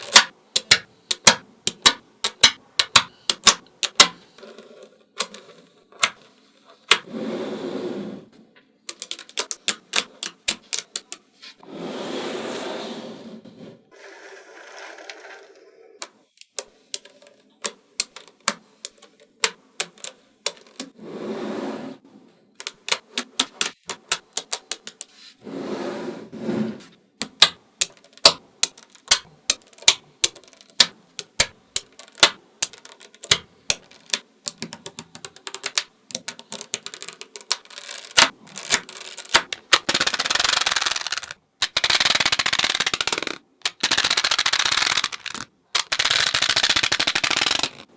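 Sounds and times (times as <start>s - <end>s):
magnetic balls clicking together: 0.0s - 4.2s, 8.9s - 11.3s, 16.0s - 21.0s, 22.6s - 25.1s, 27.2s - 47.9s
loose balls rattling: 8.9s - 11.3s, 27.2s - 47.9s.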